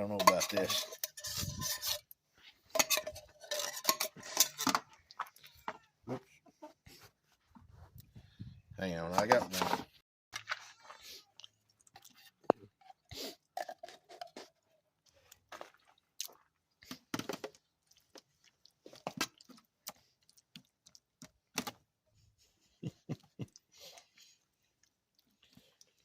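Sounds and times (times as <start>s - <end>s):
spoon scraping and clacking in pan: 0.0s - 5.0s.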